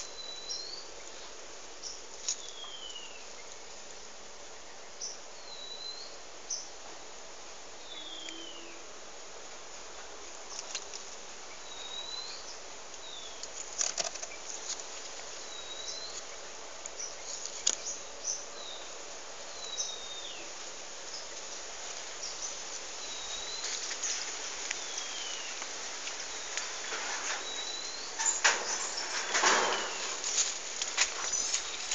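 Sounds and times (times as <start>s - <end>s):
small birds whistling calls: 7.8s - 8.8s, 11.6s - 14.7s, 15.4s - 16.3s, 22.2s - 31.9s.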